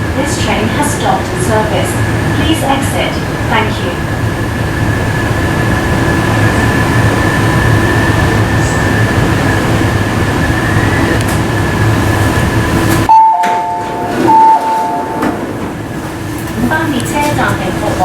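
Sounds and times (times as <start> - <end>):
train equipment humming: 0.0 - 18.0
two-tone door-closing chime: 13.1 - 15.5.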